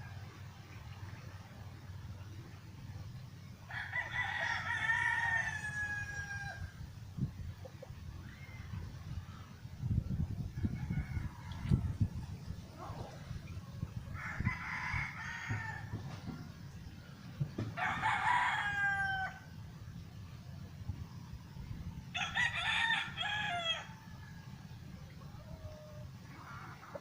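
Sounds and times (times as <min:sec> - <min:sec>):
rooster crowing: 0:03.7 - 0:06.7, 0:14.1 - 0:16.1, 0:17.8 - 0:19.5, 0:22.1 - 0:24.4.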